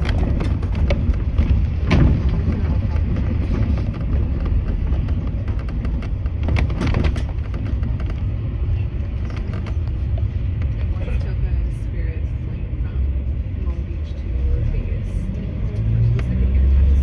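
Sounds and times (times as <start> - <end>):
faint clicks and rattles: 0.0 - 11.3
vehicle rumble from inside: 0.0 - 17.0.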